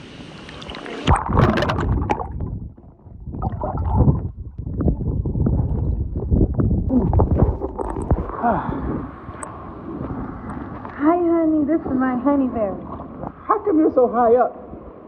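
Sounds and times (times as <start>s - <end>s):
water splashing on microphone: 0.4s - 11.1s.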